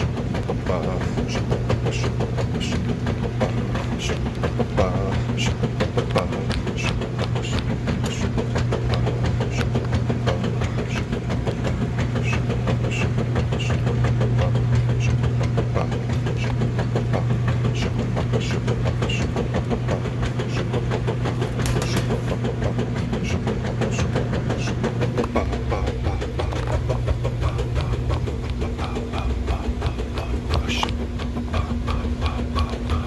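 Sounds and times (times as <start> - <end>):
washing machine running: 0.0 - 33.0.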